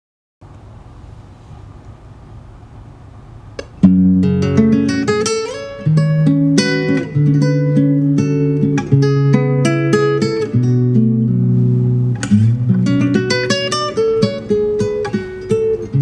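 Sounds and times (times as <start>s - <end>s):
low steady hum: 0.4s - 16.0s
plucked acoustic guitar: 3.6s - 16.0s.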